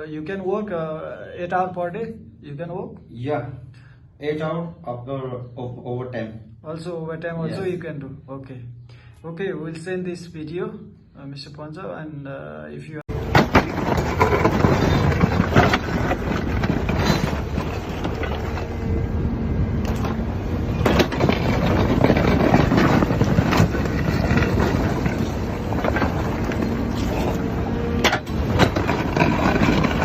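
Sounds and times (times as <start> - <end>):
knocks and clanks: 13.1 - 18.9, 19.8 - 30.0
heavy machine engine running: 13.1 - 30.0.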